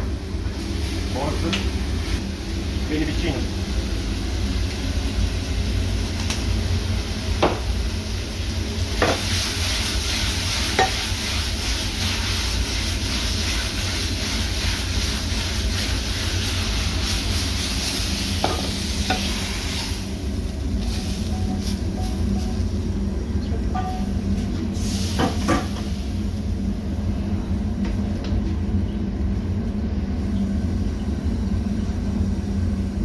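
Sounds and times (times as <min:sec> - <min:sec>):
noodles sizzling in a frying pan: 0:00.6 - 0:22.8.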